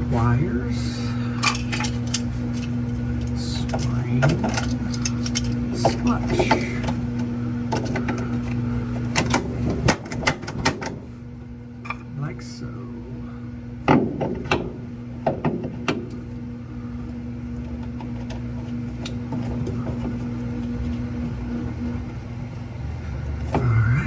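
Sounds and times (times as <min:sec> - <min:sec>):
steady low hum: 0:00.0 - 0:24.0
metal parts clicking and knocking: 0:01.4 - 0:06.7.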